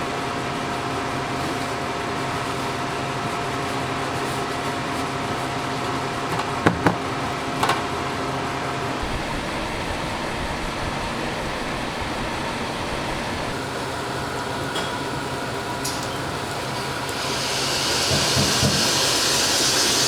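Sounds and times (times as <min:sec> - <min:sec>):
machine hum with held tone: 0:06.9 - 0:20.0.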